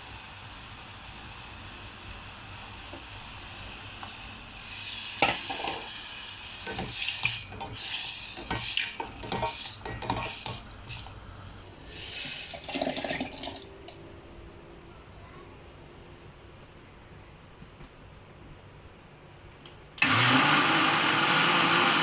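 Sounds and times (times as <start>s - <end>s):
mushrooms sizzling in a pan: 0.0s - 11.0s
utensil knocking and scraping a pan: 8.4s - 10.6s.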